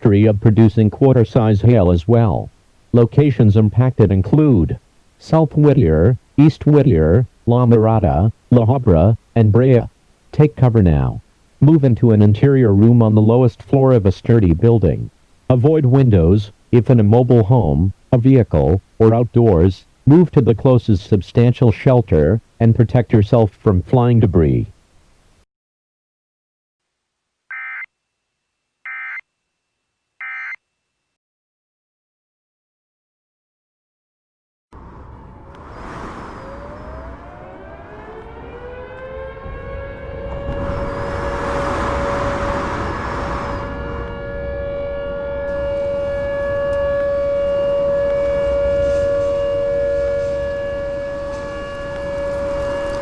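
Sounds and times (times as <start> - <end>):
warning siren steady tone: 28.9 - 29.2, 30.2 - 30.6, 36.3 - 53.0.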